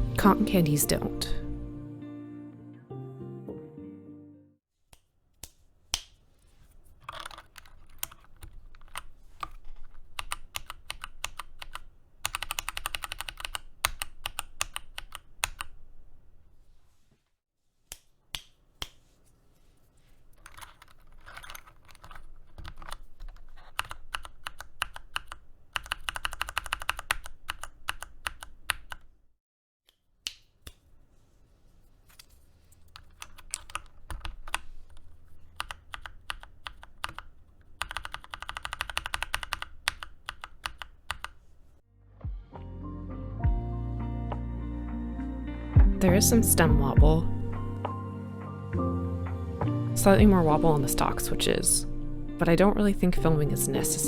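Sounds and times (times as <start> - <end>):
typing on mechanical keyboard: 7.1 - 16.0, 20.4 - 29.1, 32.9 - 41.4.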